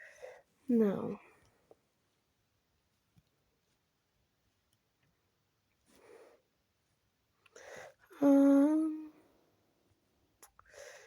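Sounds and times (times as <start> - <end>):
person humming: 8.2 - 9.1.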